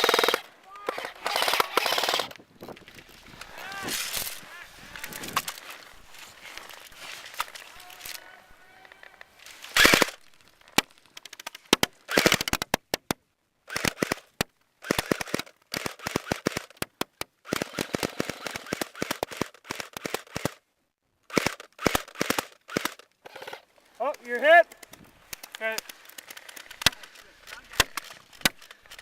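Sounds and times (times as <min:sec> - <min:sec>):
airsoft rifles firing bursts: 0:00.0 - 0:02.3, 0:09.7 - 0:10.2, 0:11.4 - 0:12.7, 0:13.7 - 0:16.7, 0:17.4 - 0:20.6, 0:21.3 - 0:23.6, 0:25.4 - 0:29.0.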